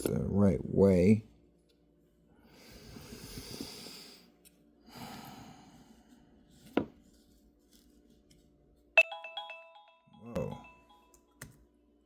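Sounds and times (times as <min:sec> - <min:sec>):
person breathing: 0:02.3 - 0:06.6.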